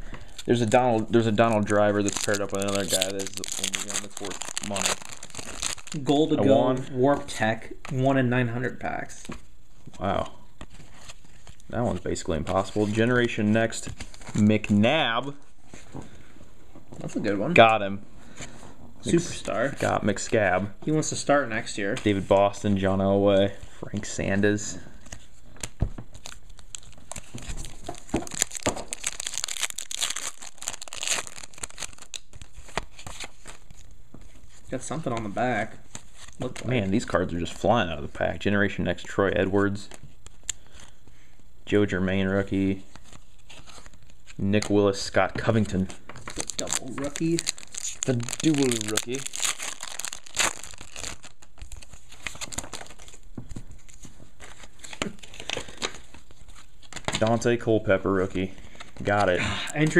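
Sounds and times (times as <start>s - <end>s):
wrapper crinkling and tearing: 0.5s - 6.4s, 26.1s - 34.0s, 46.2s - 57.5s.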